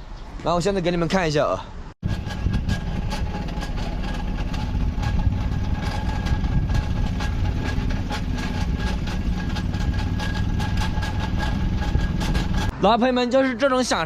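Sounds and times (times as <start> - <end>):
engine idling: 2.0 - 12.7.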